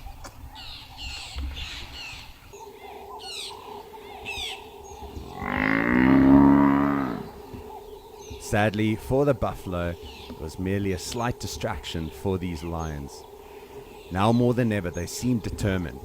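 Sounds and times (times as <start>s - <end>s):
small birds chirping: 0.0s - 16.0s
buffalo bellowing: 5.1s - 7.8s.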